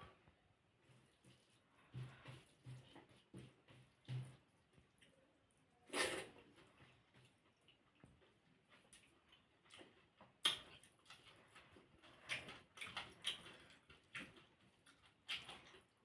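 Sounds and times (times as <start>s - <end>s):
person chewing and crunching: 5.9s - 16.0s.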